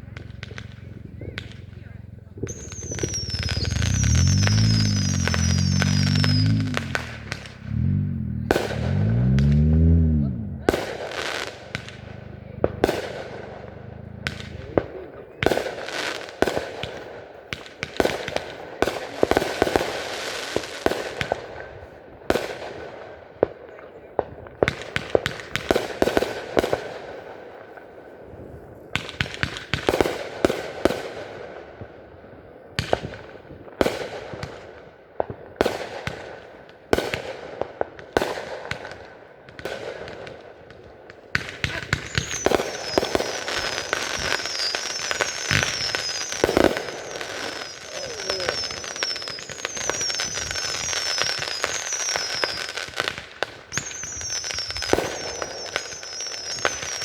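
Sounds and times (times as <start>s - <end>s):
fireworks bangs: 0.0s - 57.0s
fireworks crackling: 0.0s - 57.0s
high falling chirp: 2.4s - 9.4s, 41.9s - 52.5s.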